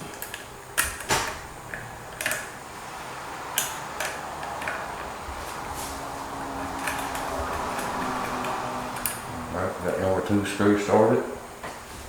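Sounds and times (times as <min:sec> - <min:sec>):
metal hardware clicks and taps: 0:00.0 - 0:02.5.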